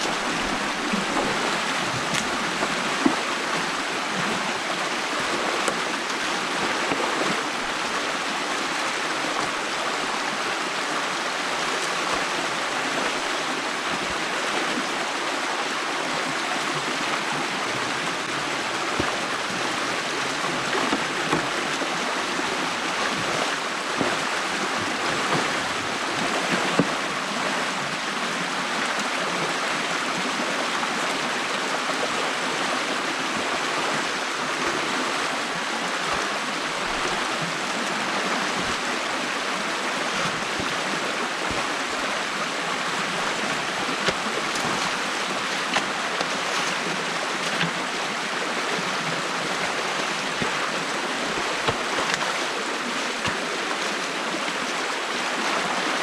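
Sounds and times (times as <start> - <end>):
knocks or splashes: 0.0 - 4.5, 18.2 - 27.1, 34.5 - 39.3, 39.9 - 54.2
stream water rushing: 0.0 - 56.0.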